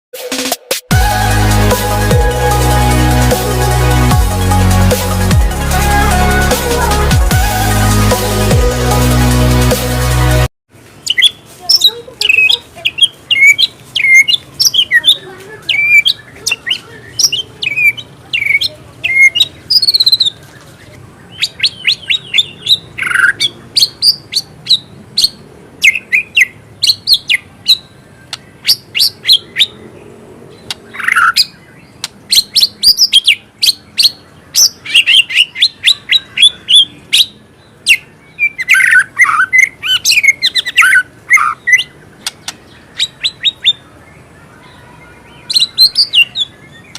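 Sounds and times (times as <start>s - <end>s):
songbird singing chirps and trills: 10.8s - 46.9s.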